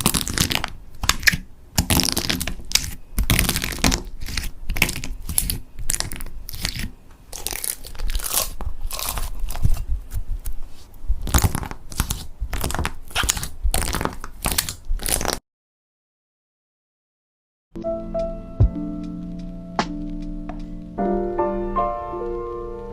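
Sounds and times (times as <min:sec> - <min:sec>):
slime crackling and popping: 0:00.0 - 0:10.2, 0:11.2 - 0:15.4.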